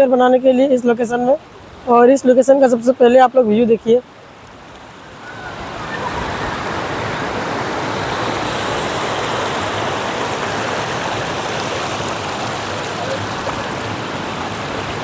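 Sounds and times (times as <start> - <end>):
waterfall rushing: 4.9 - 15.0.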